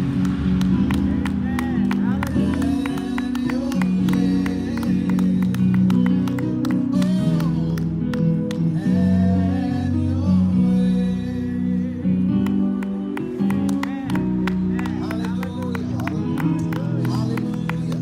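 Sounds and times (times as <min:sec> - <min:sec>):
guitar accompaniment: 0:00.0 - 0:18.0
person singing: 0:01.1 - 0:12.5, 0:13.3 - 0:18.0.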